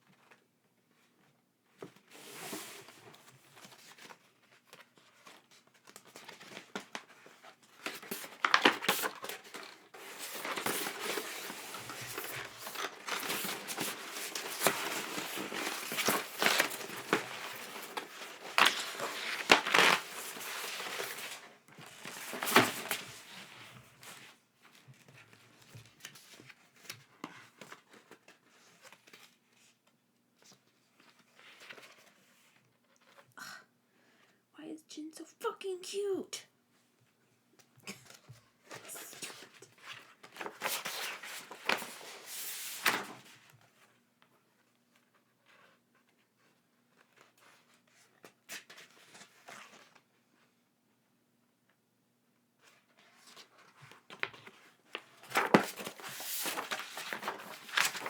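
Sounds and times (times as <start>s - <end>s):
packaging crinkling and tearing: 7.9s - 21.4s, 55.0s - 58.0s.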